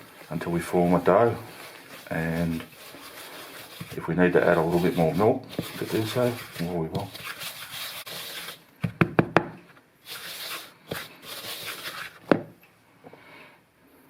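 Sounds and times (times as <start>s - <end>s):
spoon scraping dough in bowl: 0.1s - 8.6s, 10.0s - 12.3s.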